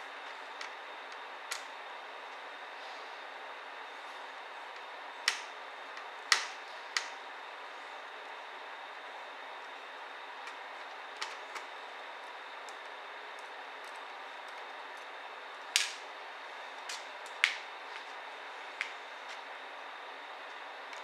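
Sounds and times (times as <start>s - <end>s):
small laptop parts clicking: 5.2s - 7.2s.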